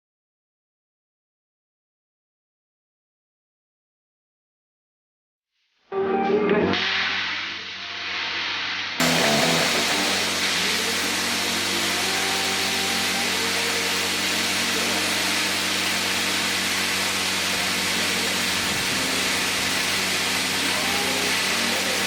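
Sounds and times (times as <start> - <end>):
plasma cutter air hiss: 6.8 - 22.0.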